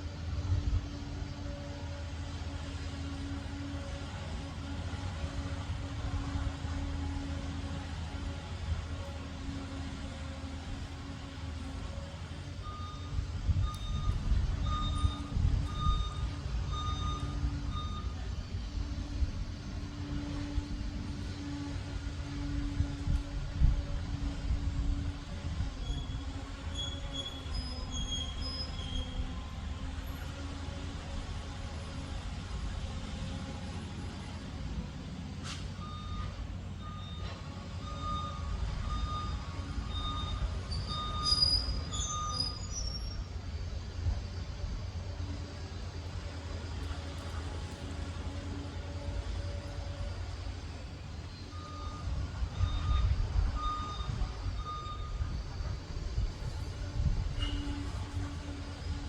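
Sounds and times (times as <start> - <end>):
diesel engine running: 0.0 - 59.0
backup alarm beeping: 12.6 - 18.2, 35.8 - 42.6, 51.4 - 55.7.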